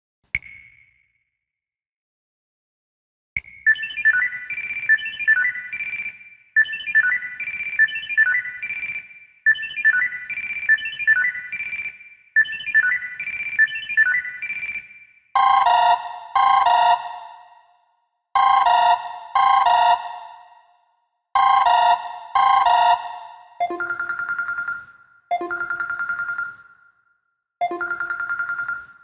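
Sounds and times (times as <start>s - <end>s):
bell-like ringtone melody: 15.4s - 17.6s, 18.4s - 20.4s, 21.4s - 26.9s, 27.6s - 29.0s
ringtone with low repeated tones: 21.4s - 27.0s, 27.6s - 29.0s.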